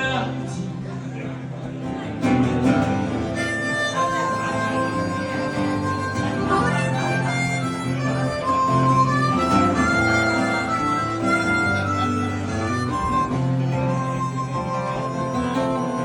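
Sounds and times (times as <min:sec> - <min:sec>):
acoustic guitar: 0:00.0 - 0:16.0
harmonica melody: 0:02.0 - 0:16.0.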